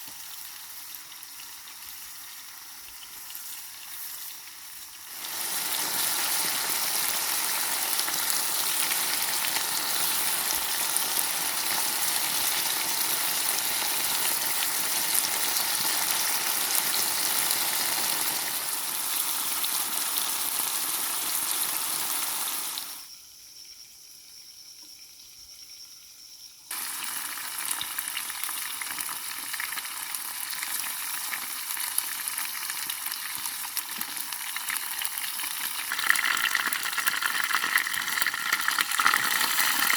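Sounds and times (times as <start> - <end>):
food sizzling in a pan: 0.0 - 23.2, 26.6 - 39.9.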